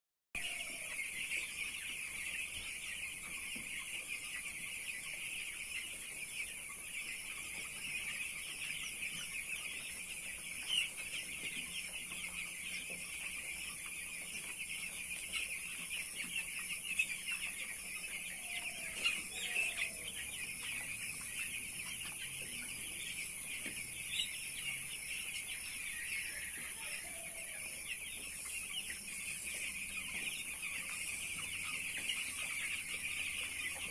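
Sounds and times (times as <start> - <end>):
chicks peeping: 0.4 - 33.9.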